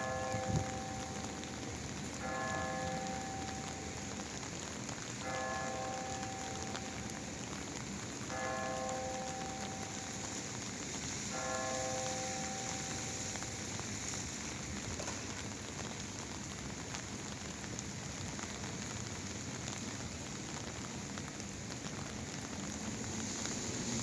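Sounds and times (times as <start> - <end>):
rain pattering on an umbrella: 0.0 - 24.0
bell-like chime: 11.3 - 13.7.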